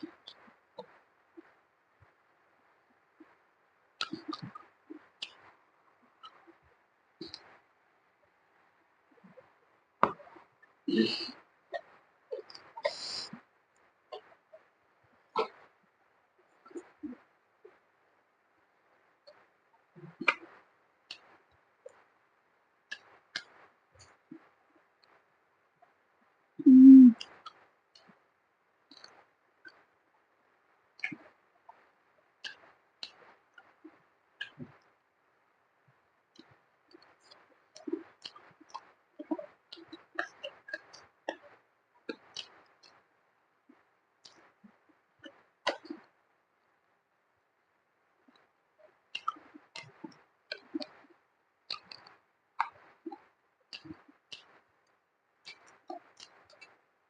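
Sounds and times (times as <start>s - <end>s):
low voiced mouth sound: 10.9s - 11.4s, 26.6s - 27.3s
wet mouth smacks while chewing: 22.9s - 23.5s, 45.2s - 46.1s, 49.1s - 51.0s, 51.7s - 54.6s, 55.4s - 56.8s
chewing and lip-smacking: 22.9s - 25.2s, 31.0s - 31.8s, 36.4s - 43.0s, 43.7s - 46.1s, 48.2s - 51.1s, 51.7s - 54.6s, 55.4s - 56.8s.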